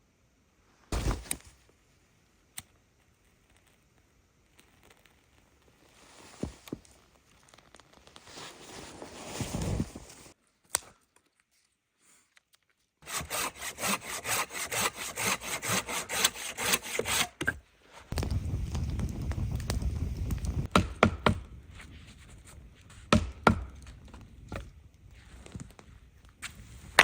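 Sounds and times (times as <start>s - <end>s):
hand saw cutting wood: 13.0s - 17.6s.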